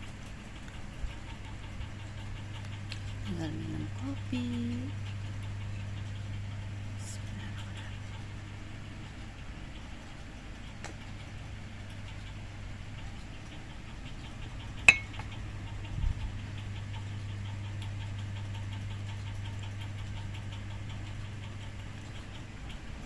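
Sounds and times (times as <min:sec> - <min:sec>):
faint rapid ticking: 0:00.0 - 0:23.0
low machine hum: 0:00.0 - 0:23.0
sharp ringing clink: 0:14.9 - 0:15.2.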